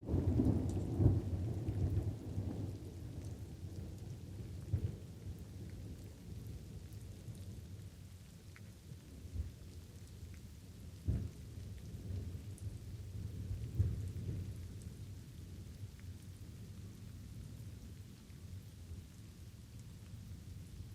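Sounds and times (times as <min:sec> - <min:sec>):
thunder rumbling: 0:00.0 - 0:03.6
light rain with drops: 0:00.0 - 0:20.9.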